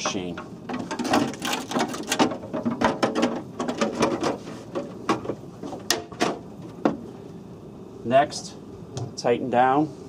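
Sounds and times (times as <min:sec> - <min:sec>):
machine cover clattering: 0:00.0 - 0:07.0.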